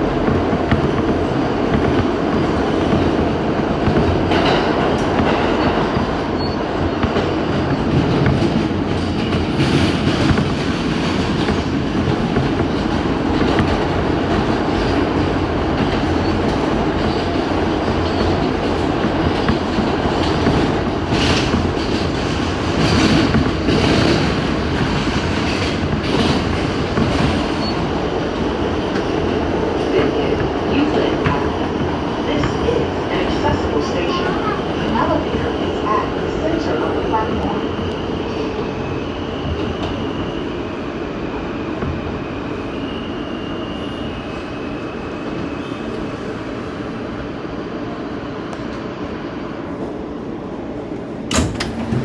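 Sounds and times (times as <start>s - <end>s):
wheels clacking over rail joints: 0.0s - 38.0s, 51.3s - 52.0s
train wheels rumbling on rail: 0.0s - 52.0s.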